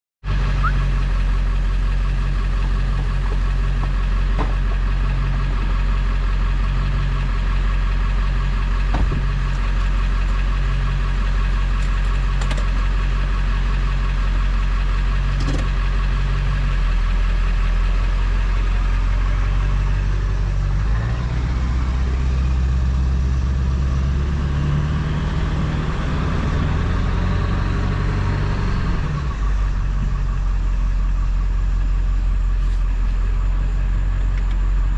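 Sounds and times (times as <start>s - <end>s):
diesel truck engine running: 0.2s - 34.9s
turbo whistle: 0.5s - 0.9s.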